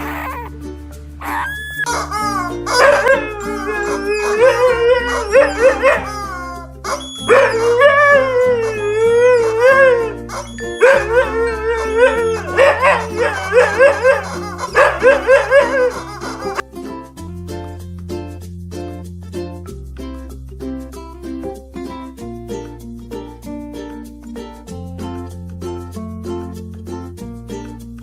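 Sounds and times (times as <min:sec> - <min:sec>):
background music: 0:00.0 - 0:28.0
dog howling: 0:01.2 - 0:16.6.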